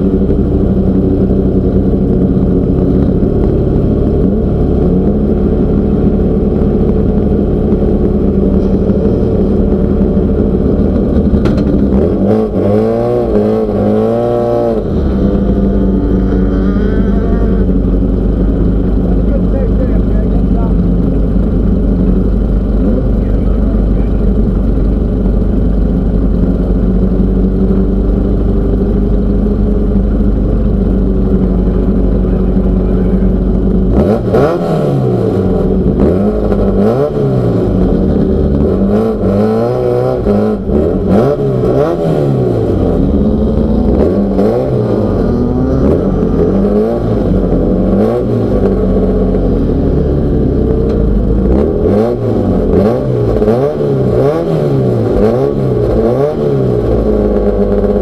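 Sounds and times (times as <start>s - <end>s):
race car engine revving: 0.0s - 58.0s
knocks and rattles: 11.0s - 12.1s.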